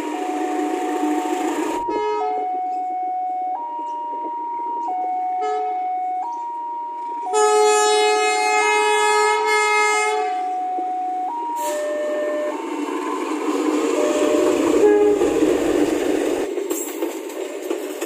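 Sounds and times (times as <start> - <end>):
locomotive air horns: 0.0 - 2.6, 7.3 - 10.6, 11.4 - 12.6, 14.0 - 15.7.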